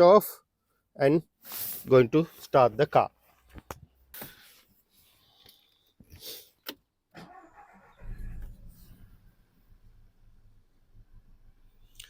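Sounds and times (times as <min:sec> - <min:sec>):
car engine cranking and starting: 0:07.1 - 0:12.0
engine rumbling with misfire: 0:07.2 - 0:11.9.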